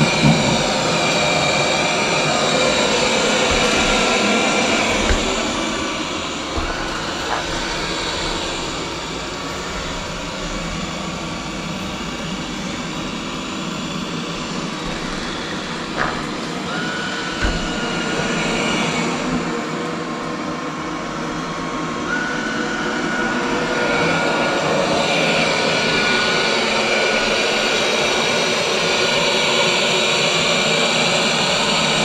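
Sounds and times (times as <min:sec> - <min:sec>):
robot vacuum whirring: 0:00.0 - 0:19.6
light knocks: 0:02.3 - 0:08.8.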